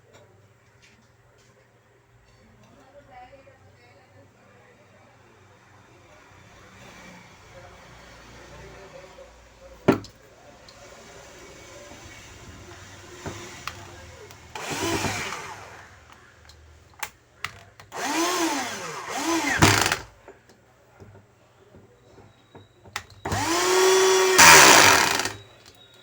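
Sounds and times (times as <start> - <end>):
electric screwdriver running: 14.6 - 15.9, 18.0 - 20.1, 23.3 - 25.4.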